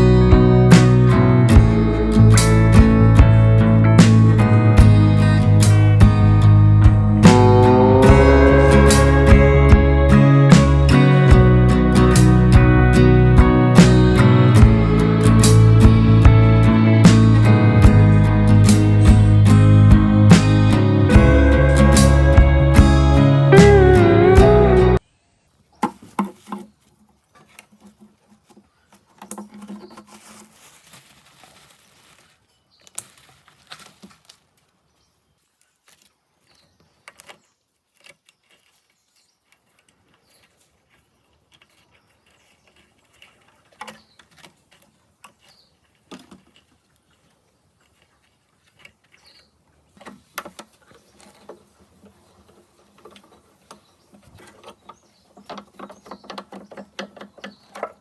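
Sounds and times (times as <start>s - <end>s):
soft rustling: 29.8s - 49.5s.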